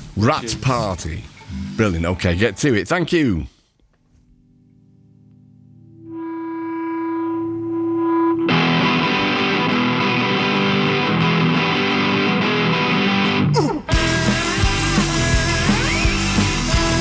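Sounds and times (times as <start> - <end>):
distorted guitar note ringing: 0.5 - 2.8, 4.5 - 17.0
rock band playing loud: 8.5 - 17.0.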